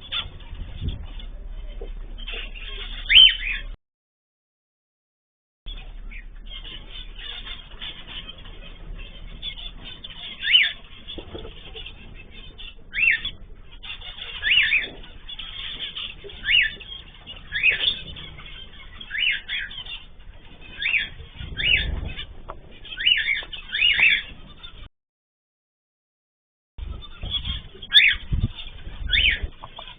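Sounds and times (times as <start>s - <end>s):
birds whistled calls: 0.0s - 3.8s, 5.7s - 24.8s, 26.8s - 29.9s.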